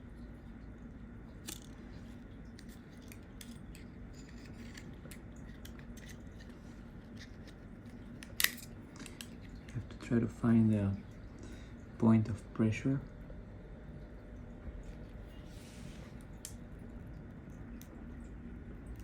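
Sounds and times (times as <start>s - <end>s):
faint steady hum: 0.0s - 19.0s
spatula clicking and scraping: 2.5s - 9.4s.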